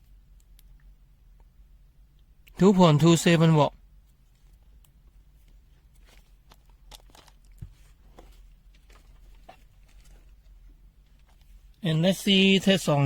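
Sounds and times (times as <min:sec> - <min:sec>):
low steady hum: 0:00.0 - 0:13.0
small objects clicking and tapping: 0:06.5 - 0:07.6.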